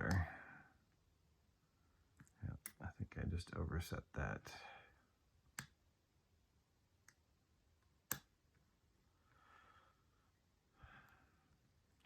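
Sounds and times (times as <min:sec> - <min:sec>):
soft breaths: 0:09.1 - 0:11.8.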